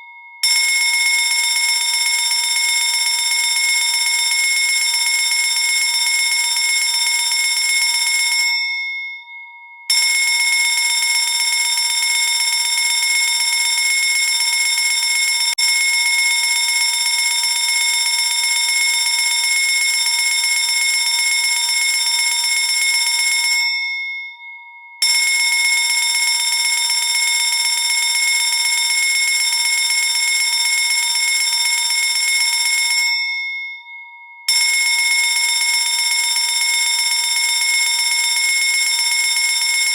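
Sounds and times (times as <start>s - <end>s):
electric fire alarm bell ringing: 0.0s - 39.9s.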